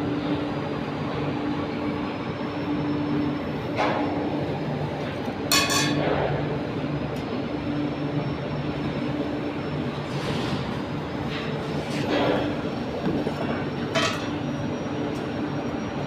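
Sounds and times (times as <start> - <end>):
industrial machinery hum and rumble: 0.0 - 16.0
ringing metallic clang: 5.5 - 6.0.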